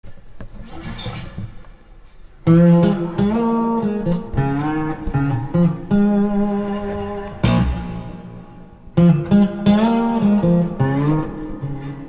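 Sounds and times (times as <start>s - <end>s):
blues guitar plucked notes: 2.4s - 12.0s.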